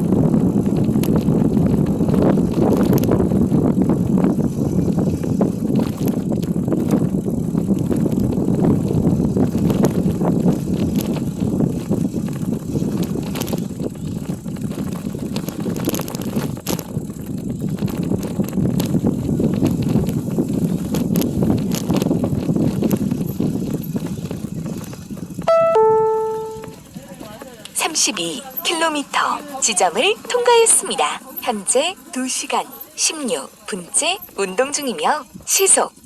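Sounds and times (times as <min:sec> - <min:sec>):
bicycle rattles and clicks: 0:00.0 - 0:25.5
bicycle tyres on dirt road: 0:00.0 - 0:27.7
phone app falling chime: 0:25.5 - 0:26.7.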